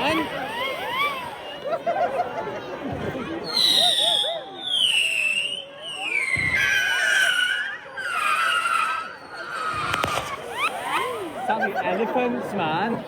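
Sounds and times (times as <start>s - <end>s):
whistling fireworks shrieking: 3.4s - 11.4s.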